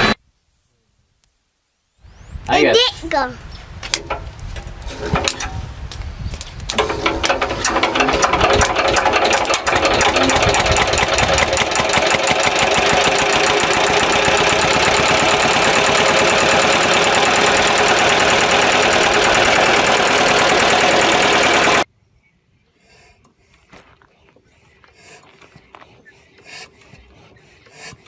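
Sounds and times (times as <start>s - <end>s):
small diesel engine running: 6.7s - 21.9s.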